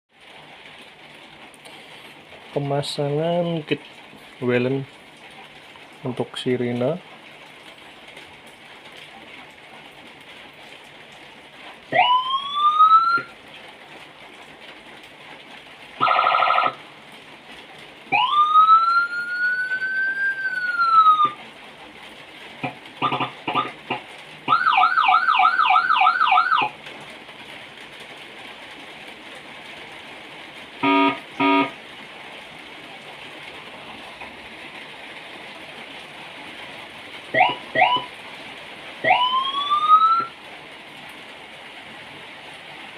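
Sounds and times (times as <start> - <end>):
electronic siren tones: 11.9 - 13.3, 16.0 - 16.8, 18.1 - 21.4, 23.0 - 26.7, 30.8 - 31.7, 37.3 - 38.1, 39.0 - 40.3.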